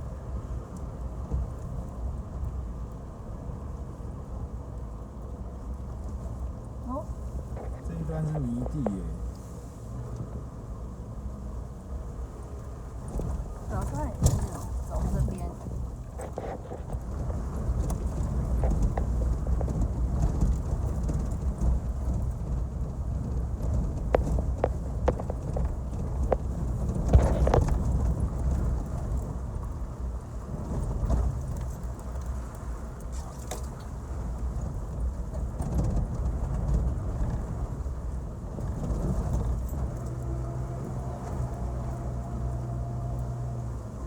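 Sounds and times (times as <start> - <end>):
engine and tyres rumbling: 0.0 - 44.0
vehicle knocks and rattles: 12.9 - 44.0.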